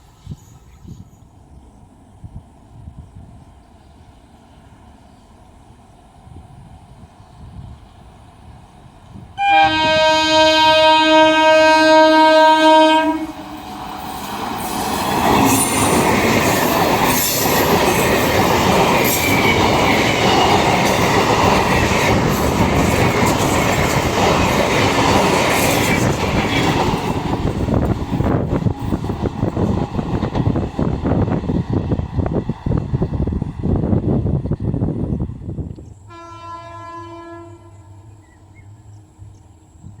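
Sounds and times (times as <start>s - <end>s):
locomotive horn blast: 9.4s - 13.6s, 36.1s - 38.0s
train wheels clattering over rails: 13.4s - 33.6s.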